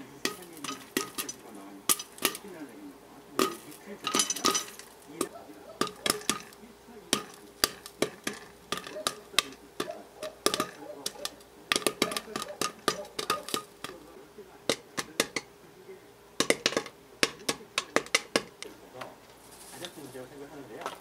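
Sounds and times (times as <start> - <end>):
dishes and utensils clinking: 0.2 - 2.5, 3.4 - 14.0, 16.4 - 18.7.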